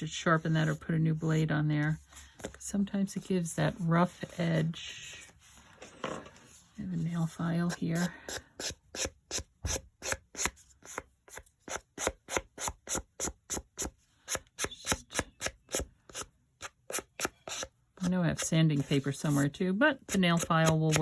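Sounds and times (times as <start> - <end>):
nail file rasping on paper: 8.0 - 17.7, 18.4 - 21.0.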